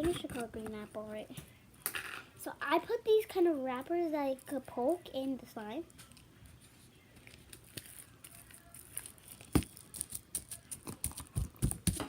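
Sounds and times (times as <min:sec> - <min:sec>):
wrappers crinkling: 0:07.2 - 0:11.6.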